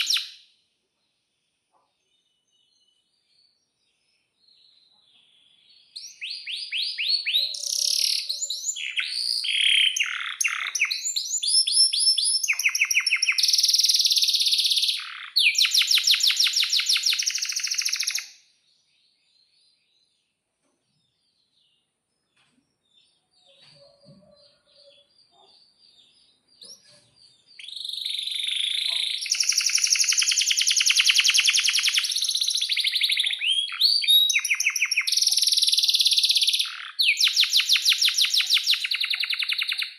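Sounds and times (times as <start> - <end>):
canary singing with trills: 0.0 - 0.4, 5.2 - 18.4, 23.0 - 39.9
faint bird chirps: 0.0 - 39.9.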